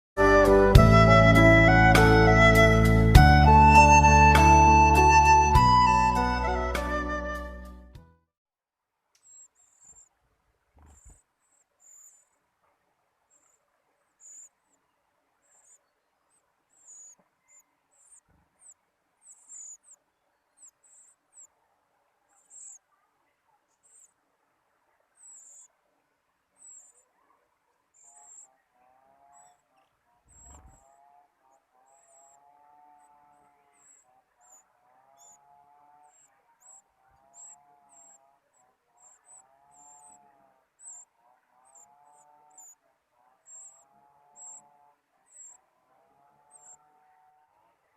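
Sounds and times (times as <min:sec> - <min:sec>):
lower repeating bird call: 0:00.2 - 0:07.6
high-pitched bird chirps: 0:10.8 - 0:12.3, 0:14.2 - 0:14.6, 0:16.7 - 0:21.5, 0:22.3 - 0:22.8, 0:25.2 - 0:25.7, 0:26.6 - 0:27.1, 0:28.0 - 0:28.6, 0:29.2 - 0:42.8, 0:43.4 - 0:45.6, 0:46.4 - 0:47.2.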